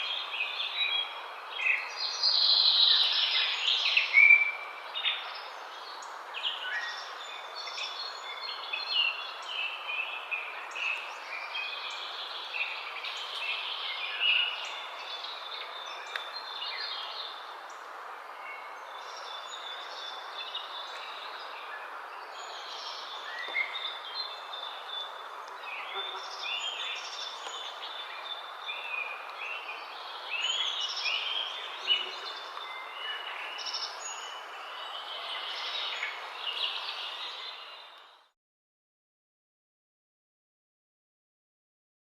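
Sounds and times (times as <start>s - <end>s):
steady background hiss: 0.0s - 38.2s
small birds chirping: 0.0s - 38.3s.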